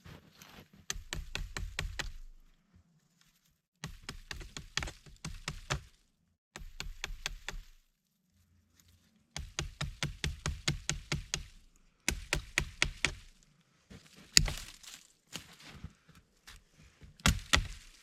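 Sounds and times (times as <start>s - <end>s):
hatchet chopping limbs: 0.9s - 2.4s, 3.8s - 6.0s, 6.6s - 7.8s, 9.4s - 13.4s, 14.3s - 15.0s, 17.2s - 18.0s.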